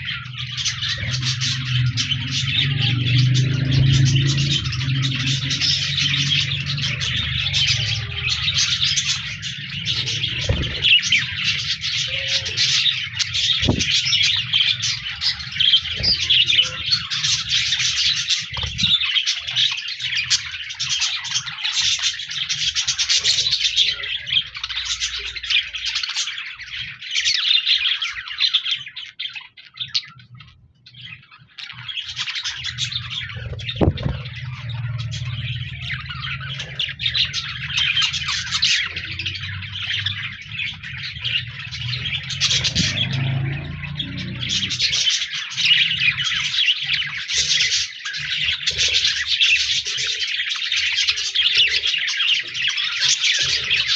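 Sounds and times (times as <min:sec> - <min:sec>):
budgerigars chirping and warbling: 0:00.0 - 0:53.9.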